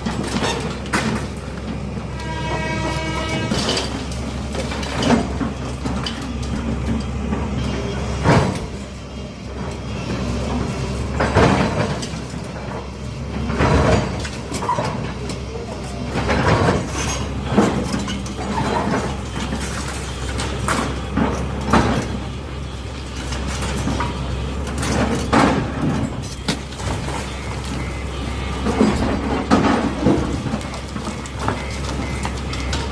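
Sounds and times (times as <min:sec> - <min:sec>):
demolition machine engine: 0:00.0 - 0:32.9
masonry crashing and thudding: 0:10.5 - 0:15.1, 0:16.0 - 0:32.9.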